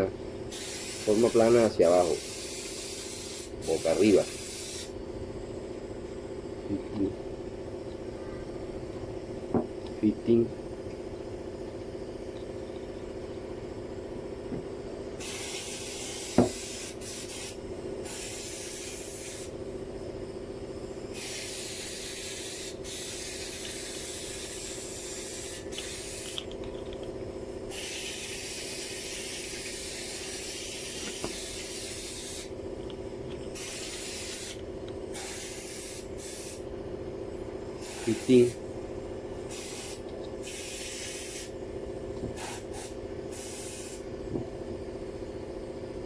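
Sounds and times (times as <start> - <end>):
steady low hum: 0.0 - 46.0
hissing bursts: 0.5 - 1.3, 2.0 - 4.9, 15.2 - 19.5, 21.1 - 26.4, 27.7 - 32.6, 33.5 - 36.6, 37.8 - 38.5, 39.5 - 41.6, 42.4 - 44.0.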